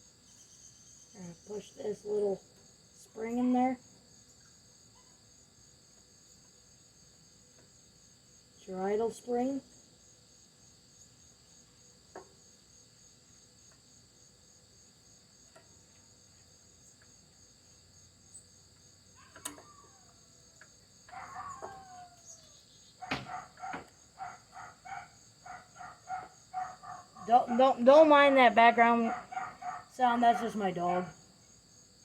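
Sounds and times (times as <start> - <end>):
dog yelping barks: 21.1 - 22.3, 23.0 - 27.8, 29.0 - 30.4
dog whining: 21.1 - 22.4.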